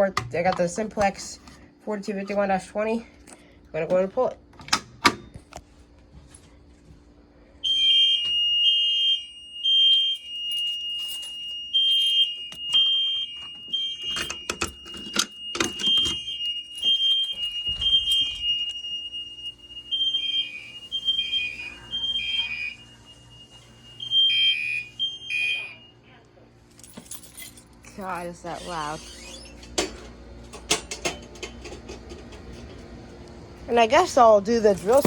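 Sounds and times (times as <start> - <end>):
fire alarm horns beeping: 7.6 - 26.2, 27.9 - 29.6
steady high tone: 14.0 - 26.0
clattering handling noise: 29.8 - 33.0.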